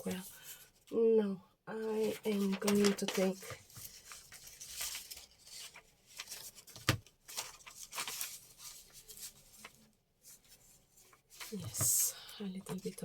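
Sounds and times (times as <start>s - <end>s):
paper rustling: 1.8s - 12.0s.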